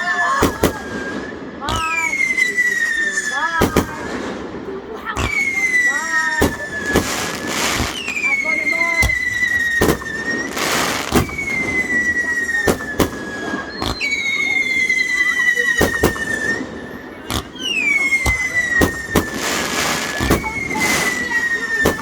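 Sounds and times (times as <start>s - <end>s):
firework bangs: 0.0s - 22.0s
fireworks whistling: 0.0s - 22.0s
crackling hiss: 6.4s - 13.1s.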